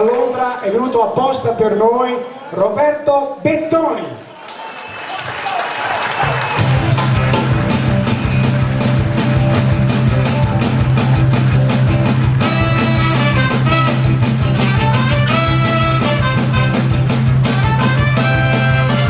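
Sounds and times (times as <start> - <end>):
upbeat dance-band music: 4.7 - 19.0.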